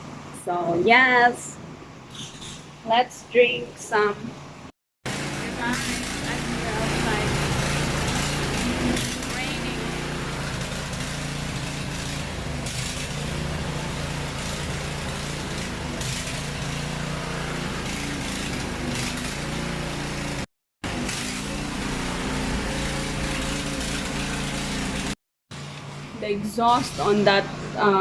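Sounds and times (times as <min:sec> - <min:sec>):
small engine running: 0:05.1 - 0:25.7, 0:26.6 - 0:28.0.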